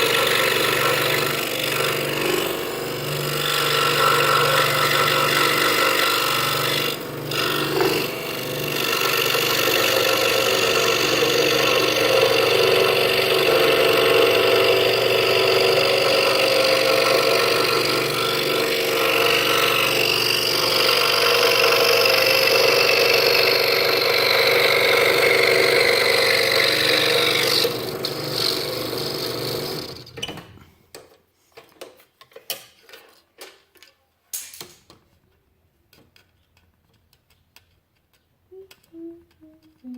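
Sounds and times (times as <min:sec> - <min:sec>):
scroll saw cutting wood: 0:00.0 - 0:30.5.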